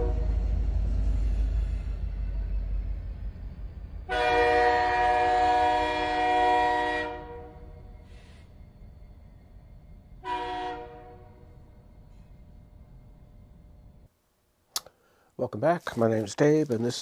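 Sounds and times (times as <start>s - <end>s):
train horn blasts: 0.0s - 0.6s, 4.0s - 7.8s, 10.2s - 11.6s.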